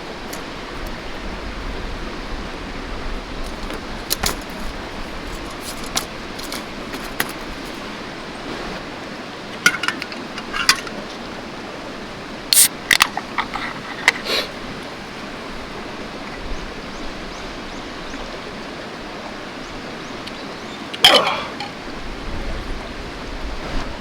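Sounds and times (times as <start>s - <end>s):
mountain stream rushing: 0.0s - 24.0s
metallic camp gear clinks: 3.5s - 7.7s.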